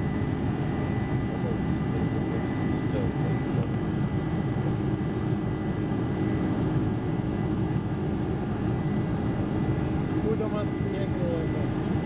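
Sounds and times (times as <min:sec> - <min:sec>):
jet engine roar in cabin: 0:00.0 - 0:12.0.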